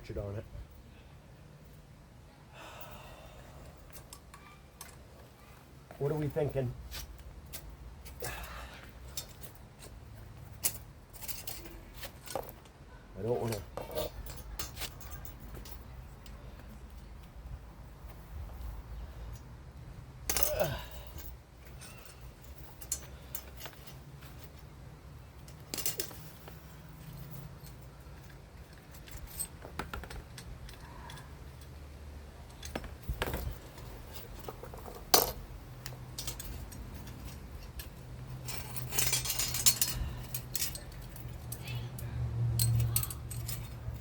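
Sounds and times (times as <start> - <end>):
wrench clinking against metal: 20.3 - 24.6, 25.4 - 31.7, 32.6 - 44.0.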